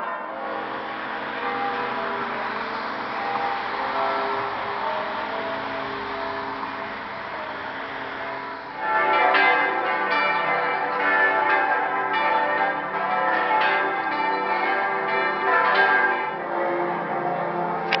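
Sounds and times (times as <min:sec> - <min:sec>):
church bells pealing: 0:00.0 - 0:18.0.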